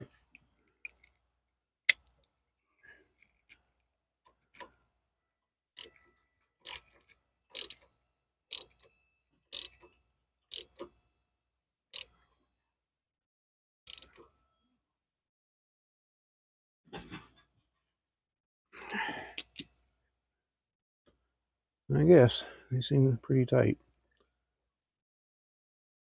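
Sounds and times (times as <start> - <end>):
hand tool metallic clicks: 7.6 - 7.8, 8.5 - 8.7, 9.5 - 9.8, 10.5 - 10.8, 13.9 - 14.1, 19.4 - 19.7.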